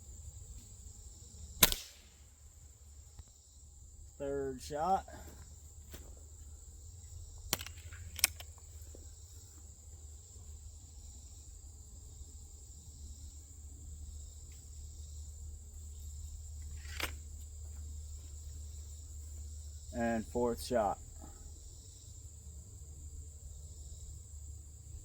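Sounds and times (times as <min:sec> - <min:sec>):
insect chirring: 0:00.0 - 0:25.0
sharp click: 0:01.6 - 0:02.1, 0:07.5 - 0:08.6, 0:16.8 - 0:17.2
air rifle cracks: 0:01.6 - 0:02.2, 0:07.5 - 0:08.6, 0:16.8 - 0:17.2.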